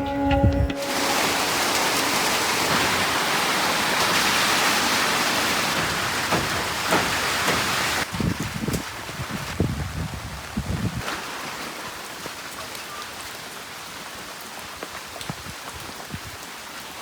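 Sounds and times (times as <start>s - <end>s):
heavy rain falling: 0.7s - 17.0s
sharp water splashes: 0.8s - 8.3s.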